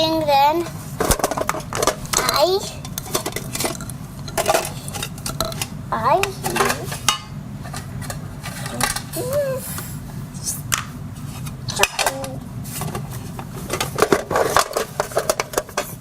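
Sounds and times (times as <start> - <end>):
plastic toy dishes clattering: 1.0 - 9.2, 11.7 - 16.0.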